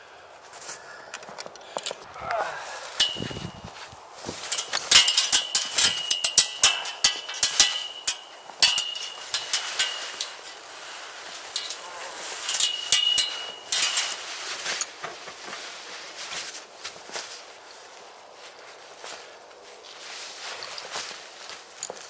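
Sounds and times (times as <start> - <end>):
metal parts clinking: 2.9 - 15.0.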